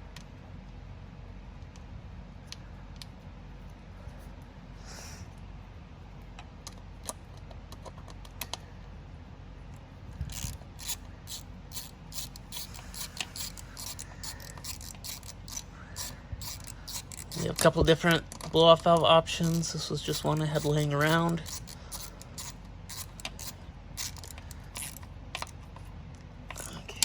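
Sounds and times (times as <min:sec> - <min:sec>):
ratchet wrench clicking: 0:10.2 - 0:18.1, 0:18.8 - 0:25.5
hand tools clicking and knocking: 0:10.3 - 0:25.6.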